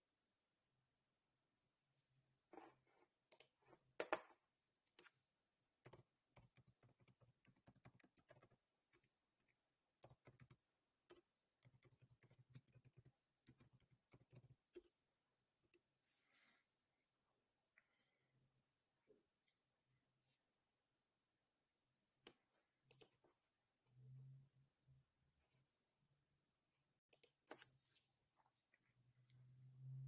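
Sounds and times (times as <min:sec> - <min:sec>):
faint keyboard typing: 0:05.8 - 0:15.0, 0:22.3 - 0:23.3, 0:27.1 - 0:27.7.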